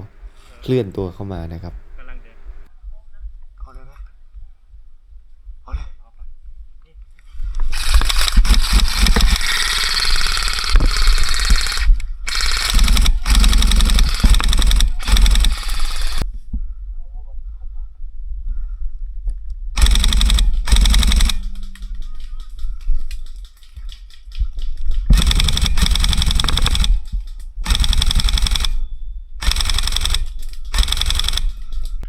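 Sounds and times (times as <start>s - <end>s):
airsoft guns firing full-auto: 7.8s - 16.2s, 19.8s - 21.7s, 25.1s - 28.8s, 29.4s - 31.6s.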